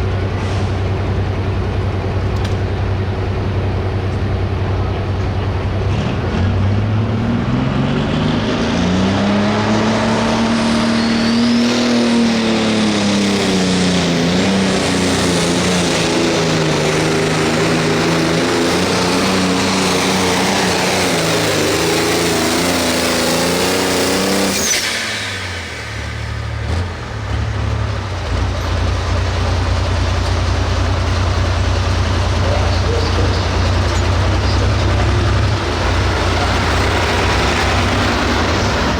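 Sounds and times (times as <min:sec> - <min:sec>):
tractor engine idling: 0:00.0 - 0:05.9, 0:25.4 - 0:38.9
tractor diesel engine at full throttle: 0:00.0 - 0:38.9.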